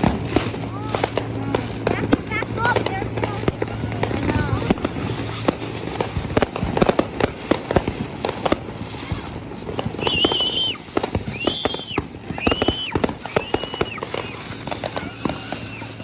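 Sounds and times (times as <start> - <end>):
fireworks popping and banging: 0.0 - 16.0
high falling whistles: 9.9 - 16.0.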